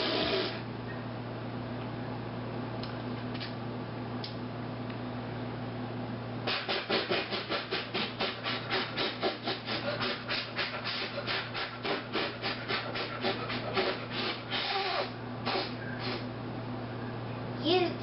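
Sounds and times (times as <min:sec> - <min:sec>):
child beatboxing with rasping puffs: 0:06.5 - 0:16.3, 0:17.6 - 0:18.0.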